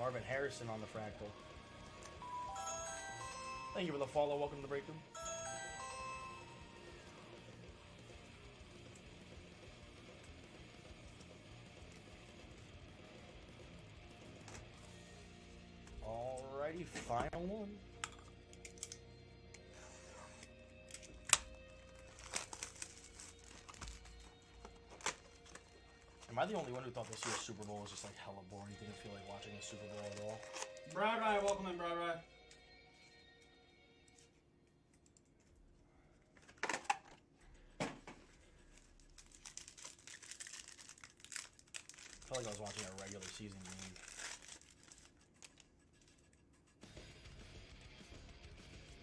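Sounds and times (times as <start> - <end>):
quiet background music: 0.0 - 49.0
card wrapper crinkling: 20.3 - 31.6, 38.4 - 46.4.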